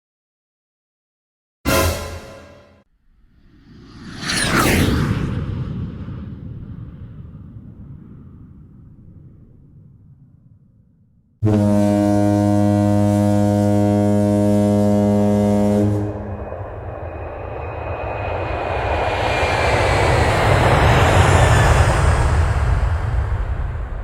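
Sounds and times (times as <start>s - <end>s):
deep horn blast: 1.7s - 2.8s, 11.4s - 16.6s
rushing noise with falling whistle: 16.0s - 21.7s.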